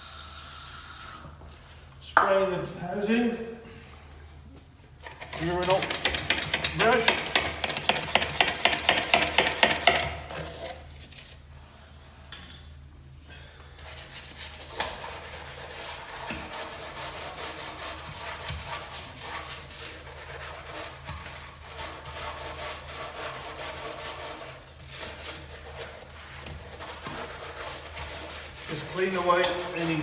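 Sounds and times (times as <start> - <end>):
brush scrubbing urinal: 5.1 - 11.0, 13.8 - 30.0.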